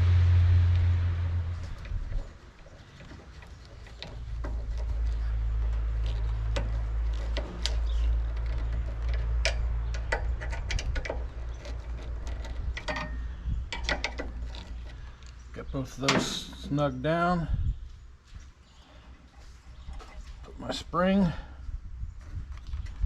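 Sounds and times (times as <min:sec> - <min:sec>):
low steady hum: 0:00.0 - 0:23.0.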